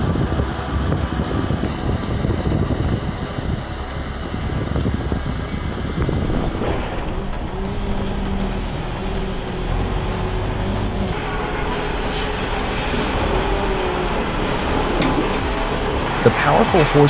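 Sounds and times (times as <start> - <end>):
diesel engine under load: 0.0 - 6.7, 8.6 - 12.0
machine droning hum: 0.0 - 17.0.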